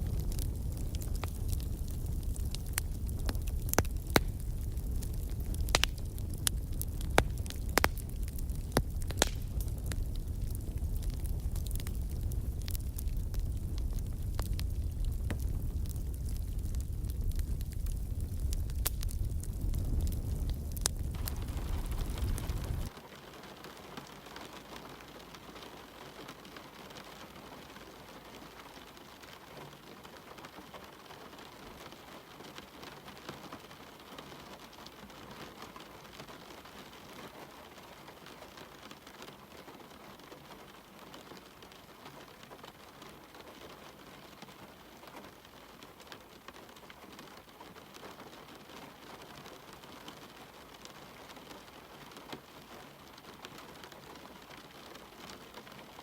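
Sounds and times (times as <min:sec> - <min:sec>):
low rumble: 0:00.0 - 0:22.9
steady rain falling: 0:00.0 - 0:56.0.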